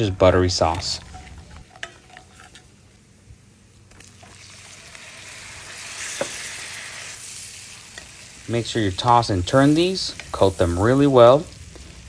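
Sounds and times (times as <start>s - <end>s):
butter sizzling in a frying pan: 3.8s - 12.0s.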